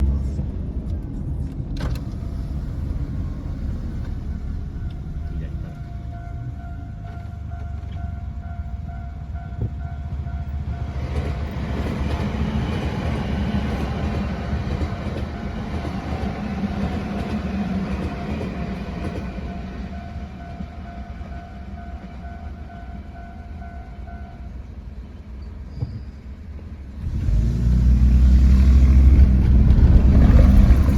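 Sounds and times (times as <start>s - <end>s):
low rumble: 0.0s - 10.9s, 26.9s - 30.9s
electric train passing: 0.0s - 30.9s
level crossing warning bell: 4.5s - 11.2s, 18.0s - 24.8s.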